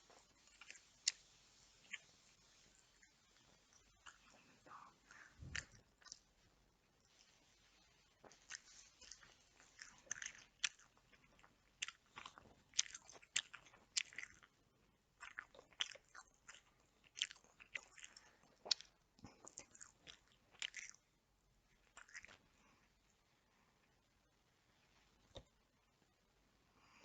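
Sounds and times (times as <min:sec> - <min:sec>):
close chewing and biting: 0:00.1 - 0:02.1, 0:02.9 - 0:06.4, 0:08.2 - 0:21.1, 0:21.7 - 0:22.6.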